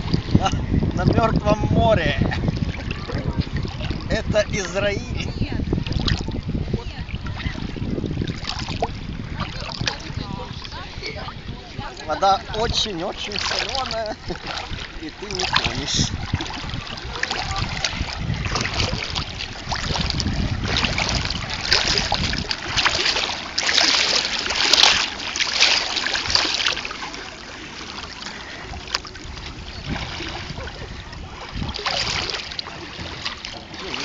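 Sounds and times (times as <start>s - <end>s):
water splashing and lapping: 0.0s - 34.0s
wind buffeting microphone: 0.0s - 34.0s.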